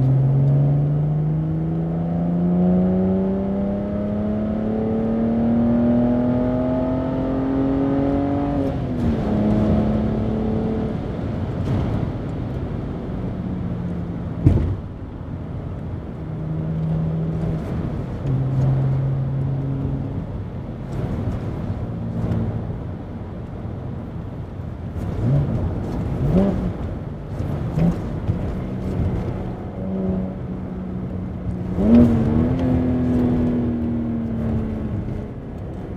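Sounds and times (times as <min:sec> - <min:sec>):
car engine revving: 0:00.0 - 0:12.1, 0:24.8 - 0:35.9.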